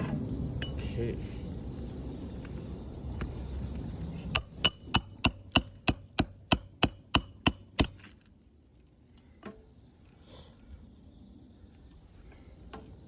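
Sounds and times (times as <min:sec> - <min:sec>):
hammer driving nail: 0:04.4 - 0:08.1.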